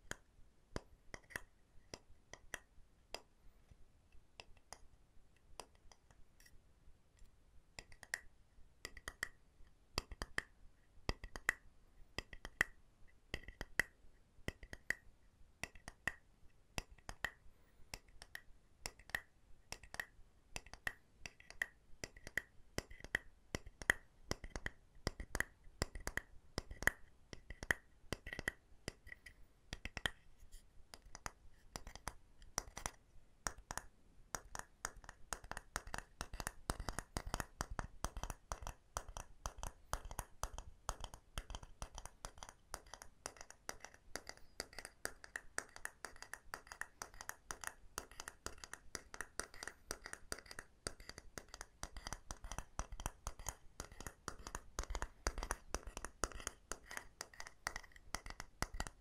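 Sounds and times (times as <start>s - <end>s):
rapid tapping on wood: 33.5s - 59.0s.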